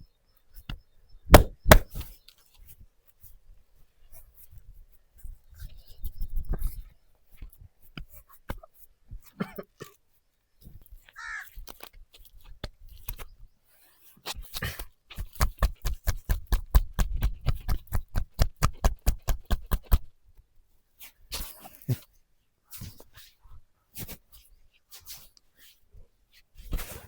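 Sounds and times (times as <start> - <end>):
rapid percussive massage strokes: 1.3 - 2.0, 15.2 - 20.0.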